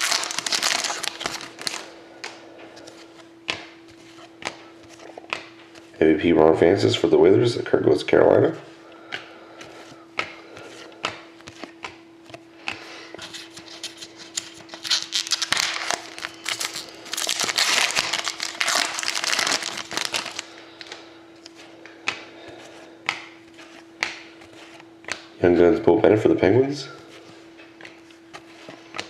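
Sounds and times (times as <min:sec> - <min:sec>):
foil wrapper crinkling: 0:00.0 - 0:01.9, 0:13.9 - 0:21.0.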